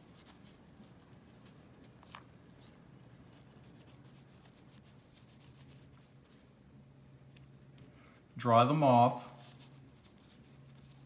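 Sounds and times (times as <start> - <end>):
faint rubbing and scratching: 0.0 - 6.9, 9.1 - 11.0.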